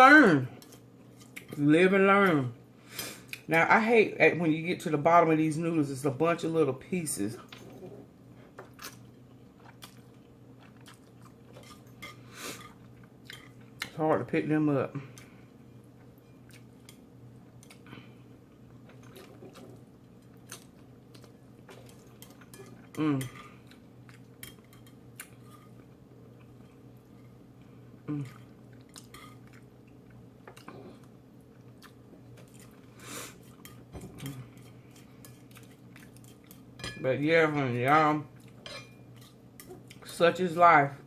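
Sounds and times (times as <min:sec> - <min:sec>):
quiet chewing: 0:07.5 - 0:14.0, 0:15.1 - 0:36.7, 0:38.3 - 0:40.1
person humming: 0:23.0 - 0:23.4, 0:28.0 - 0:28.4.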